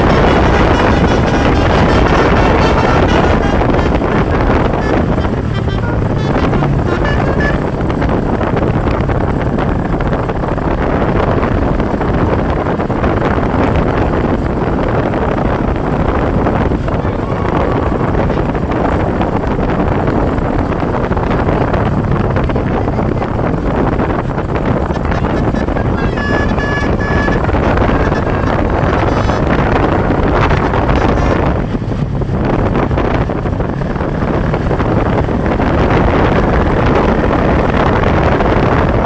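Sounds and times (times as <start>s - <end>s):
large vehicle engine rumble: 0.0s - 39.0s
road noise: 0.0s - 39.0s
wind buffeting microphone: 0.0s - 39.0s.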